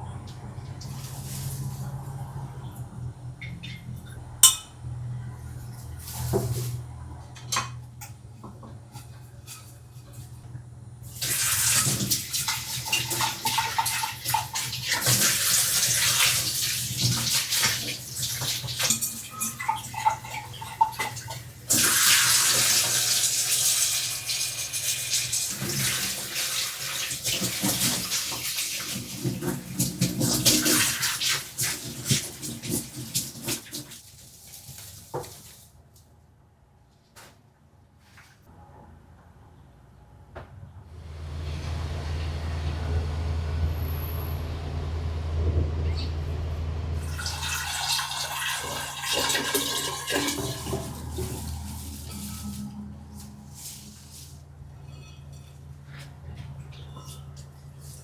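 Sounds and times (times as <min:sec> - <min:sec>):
tap water running and splashing: 0:11.1 - 0:35.6, 0:47.0 - 0:52.5.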